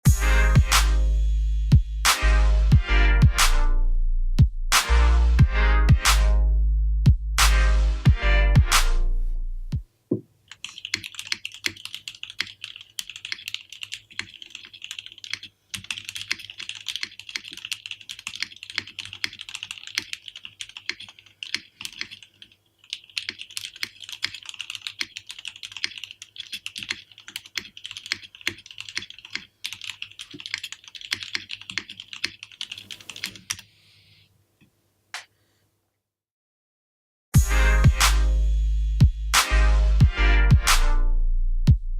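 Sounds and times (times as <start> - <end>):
typing on mechanical keyboard: 10.5 - 33.7.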